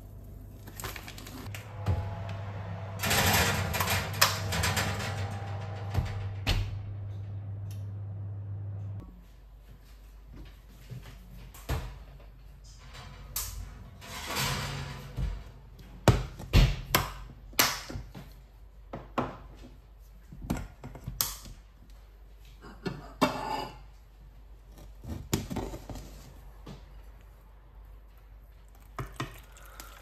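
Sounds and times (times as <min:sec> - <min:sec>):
cookware and utensils clattering: 0:22.6 - 0:24.0.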